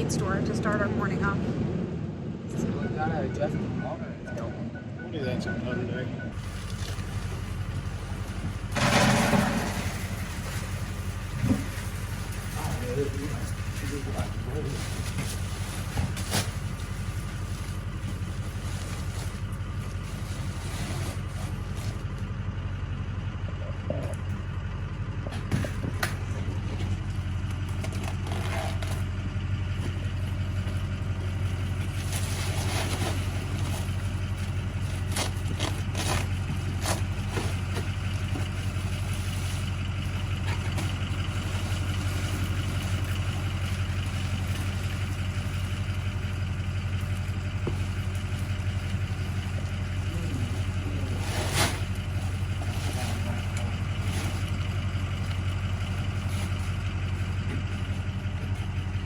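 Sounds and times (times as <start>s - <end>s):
farm vehicle engine droning: 0.0s - 59.0s
knocks and rattles: 6.4s - 16.6s.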